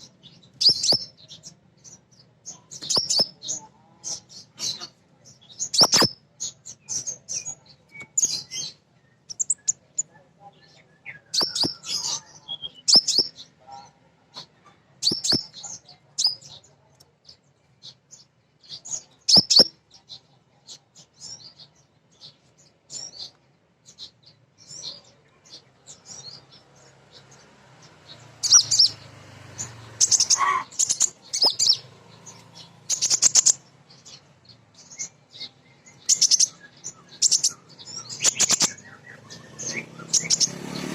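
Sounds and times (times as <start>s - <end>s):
bird chirping and twittering: 0.0s - 40.9s.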